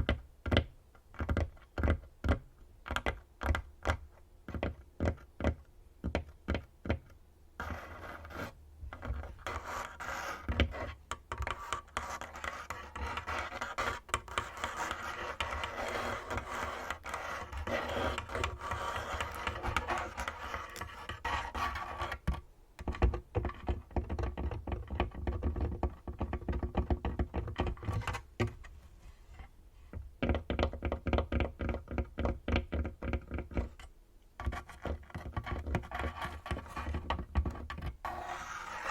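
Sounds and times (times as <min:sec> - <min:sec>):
nails scratching: 0:07.6 - 0:22.3, 0:33.5 - 0:38.9.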